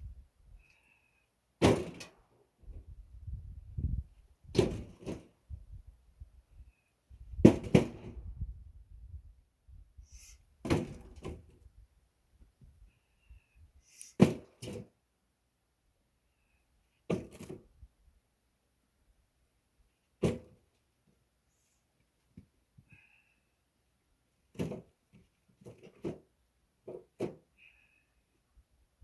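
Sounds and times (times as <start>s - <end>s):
wooden logs thudding down: 1.6s - 2.1s, 4.5s - 5.3s, 7.4s - 8.2s, 10.6s - 11.6s, 14.2s - 14.9s, 17.1s - 17.7s, 20.2s - 20.6s, 24.5s - 24.9s.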